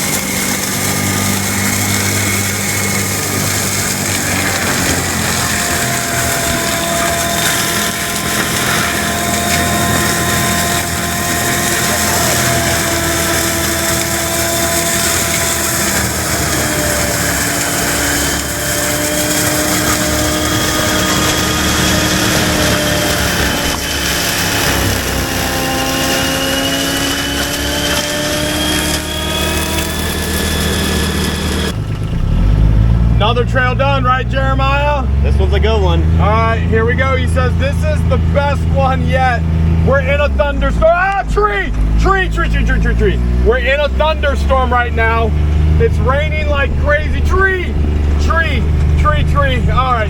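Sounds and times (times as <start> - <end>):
engine and hydraulic drone: 0.0 - 50.0
mulcher whine: 0.0 - 50.0.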